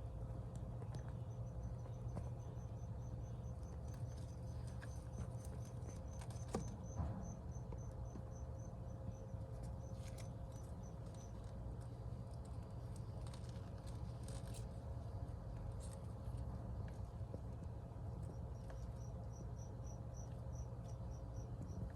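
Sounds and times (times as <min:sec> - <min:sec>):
low steady hum: 0:00.0 - 0:21.9
cricket chirping: 0:01.0 - 0:11.6, 0:18.2 - 0:21.9.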